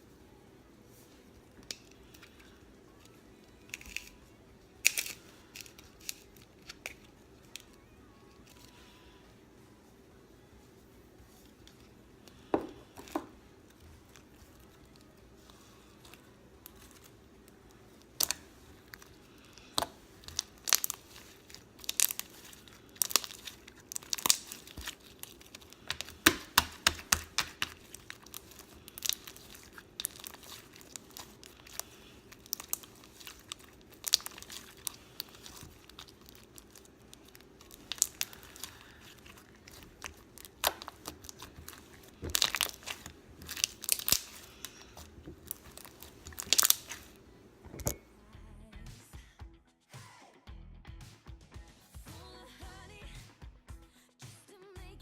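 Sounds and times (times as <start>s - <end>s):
crunchy slime crackling and popping: 1.6s - 8.9s, 11.7s - 47.2s.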